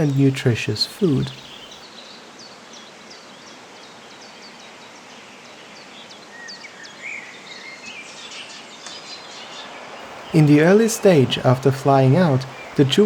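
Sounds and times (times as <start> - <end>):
birds calling: 0.0 - 1.8, 10.0 - 13.0
background hiss: 0.0 - 2.2, 8.4 - 13.0.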